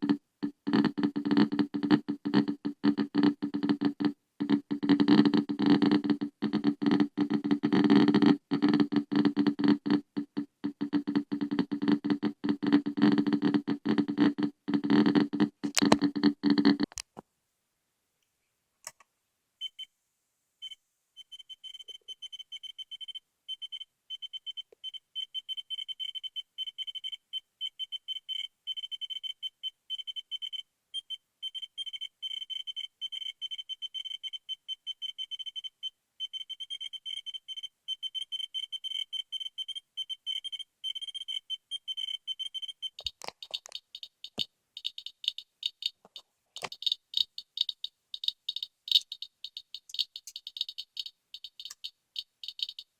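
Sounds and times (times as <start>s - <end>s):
geiger counter beeping: 0.0s - 16.9s, 20.6s - 52.9s
counter sharp dry clicks: 43.0s - 52.9s.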